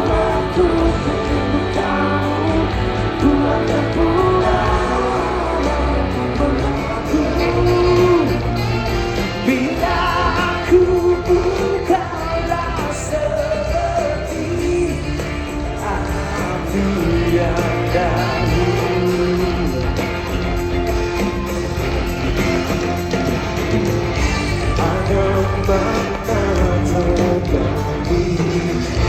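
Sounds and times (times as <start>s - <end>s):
bass line: 0.0s - 29.0s
lead singer: 0.0s - 29.0s
live pop band: 0.0s - 29.0s.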